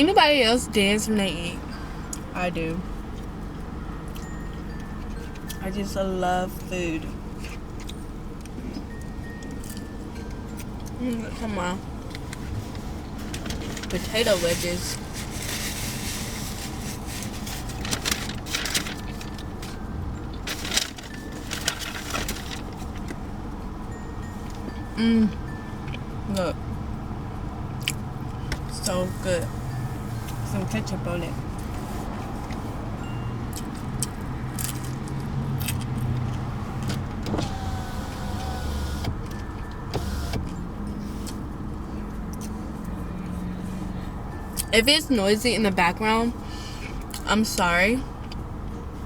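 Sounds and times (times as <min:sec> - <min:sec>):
hum of cars running: 0:00.0 - 0:49.0
vehicles passing: 0:00.0 - 0:49.0
food packaging crinkling: 0:15.0 - 0:19.6, 0:20.5 - 0:23.0.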